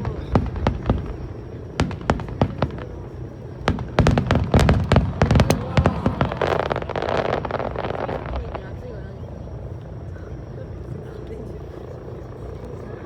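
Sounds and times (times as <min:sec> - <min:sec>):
fireworks crackling pops: 0:00.0 - 0:08.8
fireworks bangs: 0:00.0 - 0:08.9.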